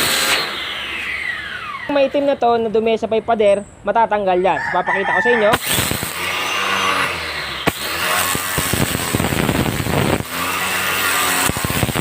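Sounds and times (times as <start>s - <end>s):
pressure washer spraying a wall: 0.0s - 1.4s, 5.5s - 12.0s
pressure washer low hum: 0.0s - 3.5s, 5.5s - 12.0s.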